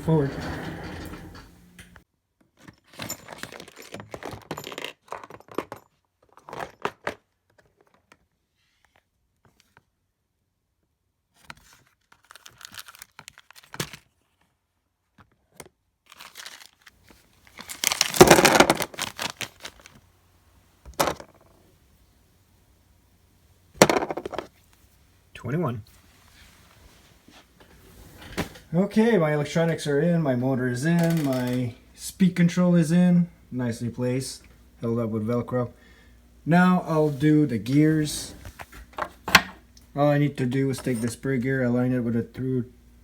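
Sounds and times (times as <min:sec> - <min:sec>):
small parts clicking and rattling: 0:02.6 - 0:06.9, 0:17.5 - 0:20.0, 0:31.0 - 0:31.7
velcro tearing rip: 0:16.1 - 0:16.9, 0:17.5 - 0:20.0.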